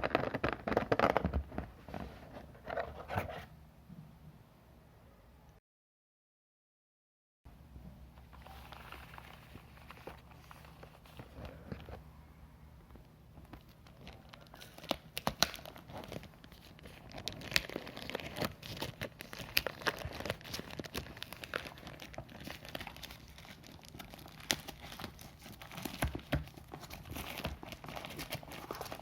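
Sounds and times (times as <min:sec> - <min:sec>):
plastic wrapping crinkling: 0:00.0 - 0:01.8, 0:08.2 - 0:12.0, 0:13.4 - 0:29.0.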